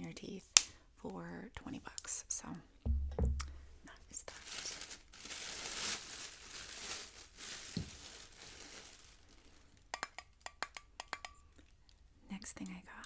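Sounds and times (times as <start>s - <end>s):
soft thump: 2.8s - 3.5s, 7.7s - 8.0s
packaging crinkling: 4.1s - 9.9s.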